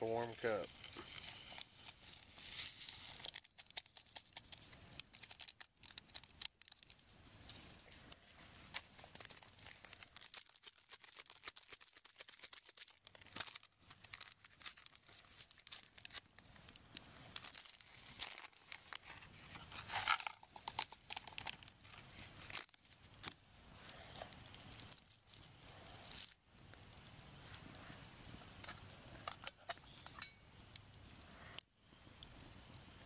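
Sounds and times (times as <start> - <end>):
packets crinkling and tearing: 0.3 - 26.4.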